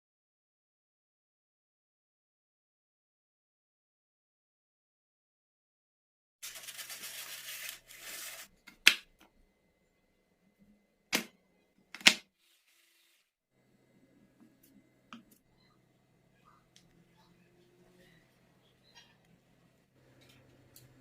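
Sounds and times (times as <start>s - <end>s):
rustling: 6.4s - 8.6s.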